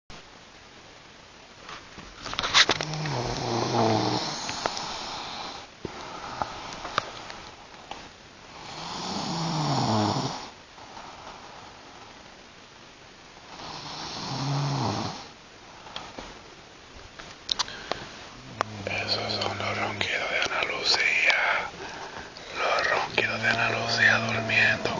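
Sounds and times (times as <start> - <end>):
woman snoring loudly: 2.9 - 5.7, 8.6 - 10.5, 13.6 - 15.3, 22.5 - 24.9.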